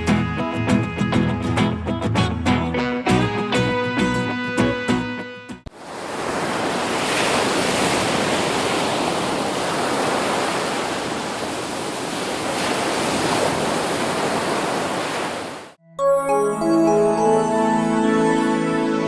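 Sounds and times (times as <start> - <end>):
sea waves washing ashore: 5.7 - 15.8.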